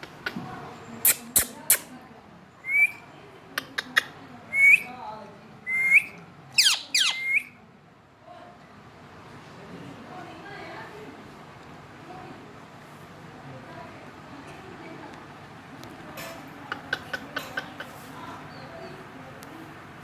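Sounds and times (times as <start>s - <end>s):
parakeet squawking: 6.6s - 7.5s.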